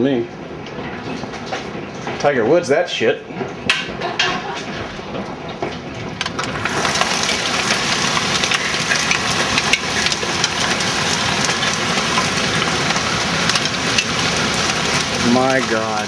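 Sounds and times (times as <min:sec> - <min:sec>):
large hail clattering: 0:06.2 - 0:16.0.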